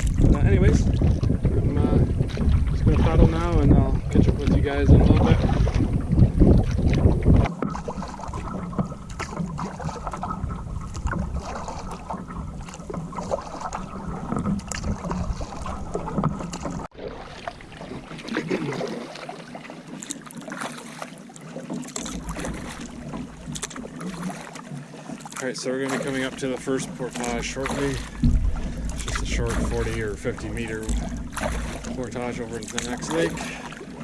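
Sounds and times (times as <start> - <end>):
wind buffeting microphone: 0.0 - 7.5, 8.1 - 16.9, 26.1 - 34.0
paddle splashing in water: 0.0 - 34.0.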